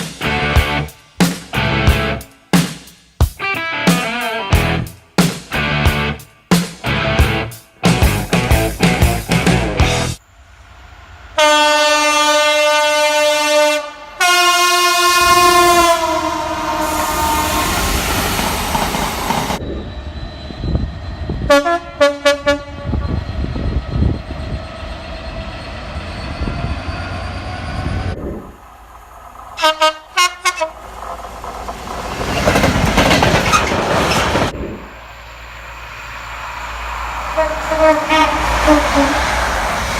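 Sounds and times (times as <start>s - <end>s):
passing train rumble: 0.2s - 2.2s, 4.6s - 39.9s
train horn short toots: 11.4s - 17.8s, 21.5s - 23.0s, 29.6s - 30.8s, 37.4s - 39.3s
train horn blasts: 11.4s - 17.9s, 21.5s - 23.1s, 29.6s - 30.8s, 37.3s - 39.4s.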